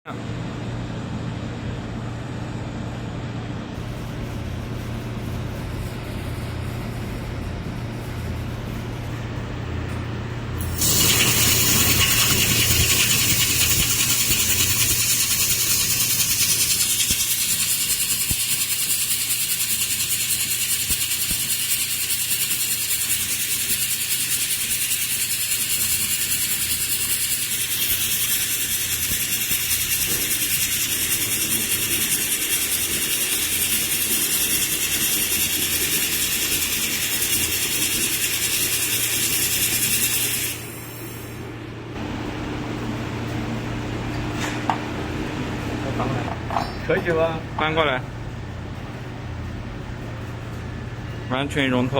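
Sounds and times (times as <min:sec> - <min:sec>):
welding machine humming: 0:03.8 - 0:44.0.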